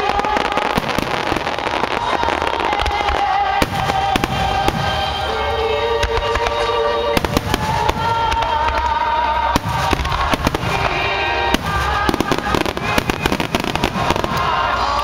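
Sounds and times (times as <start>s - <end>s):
fireworks bursting and crackling: 0.0s - 15.0s
music: 0.0s - 15.0s.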